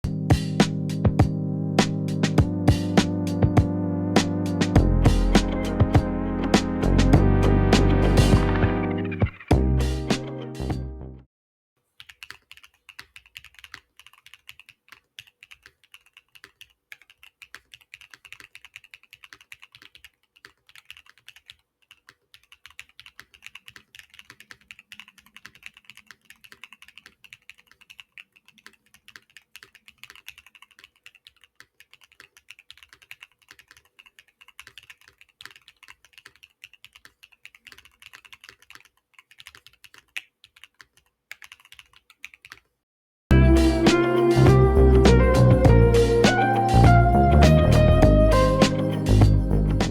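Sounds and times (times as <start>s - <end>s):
fast typing on mechanical keyboard: 12.0s - 42.8s.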